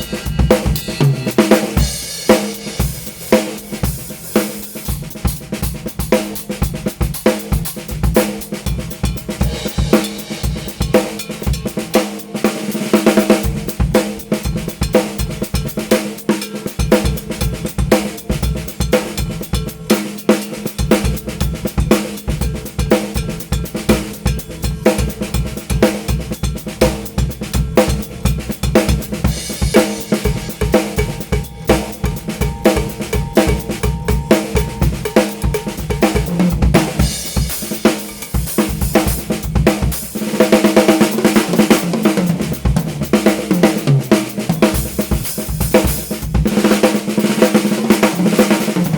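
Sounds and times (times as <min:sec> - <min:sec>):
cymbals crashing: 0:00.0 - 0:03.2, 0:29.4 - 0:39.3
drum kit groove: 0:00.0 - 0:48.9.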